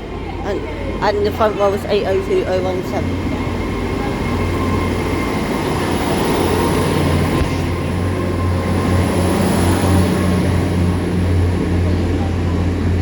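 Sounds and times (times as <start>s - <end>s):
train engines humming: 0.0s - 13.0s
high-pitched whine: 0.1s - 13.0s.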